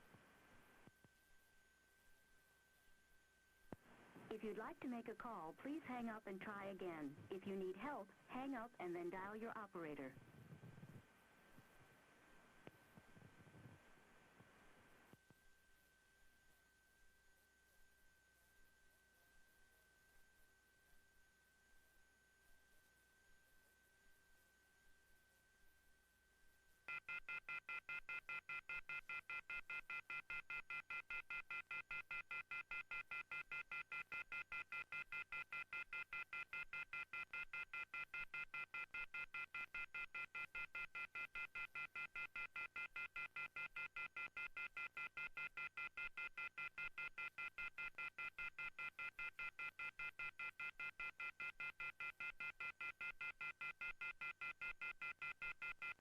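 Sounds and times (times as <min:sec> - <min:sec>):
telephone off-hook warning tone: 0:26.9 - 0:56.0.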